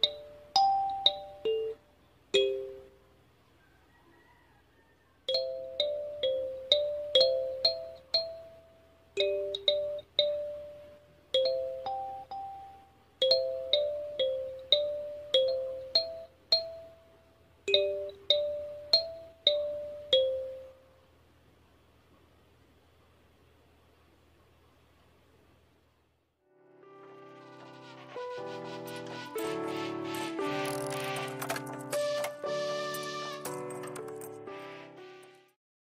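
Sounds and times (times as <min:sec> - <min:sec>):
kalimba melody: 0:00.0 - 0:01.8, 0:02.4 - 0:03.0, 0:05.3 - 0:17.0, 0:17.7 - 0:20.8.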